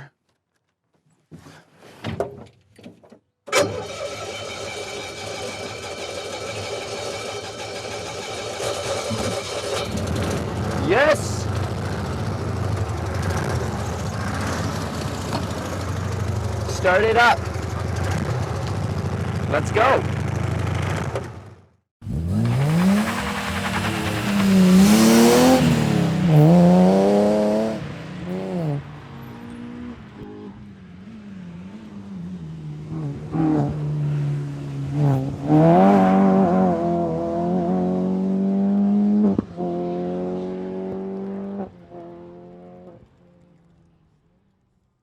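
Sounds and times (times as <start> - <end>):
utility vehicle engine revving: 3.5 - 43.4.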